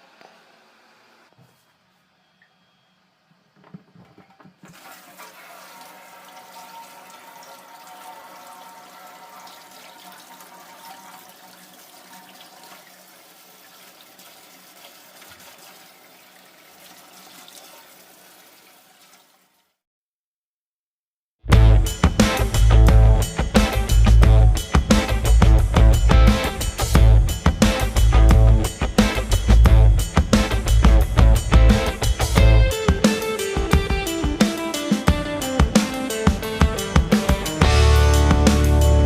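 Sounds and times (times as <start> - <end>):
tap water running: 3.7 - 19.7.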